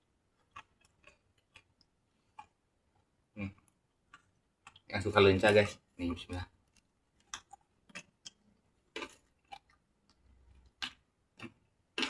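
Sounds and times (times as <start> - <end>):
chewing crunches: 0.4 - 2.6, 6.7 - 12.0.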